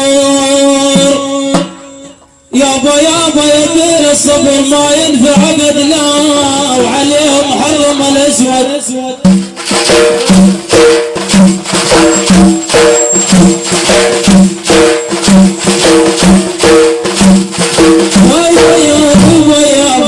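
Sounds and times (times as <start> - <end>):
steady percussion beat: 0.0 - 20.0
tambourine-like jingles: 11.7 - 16.5.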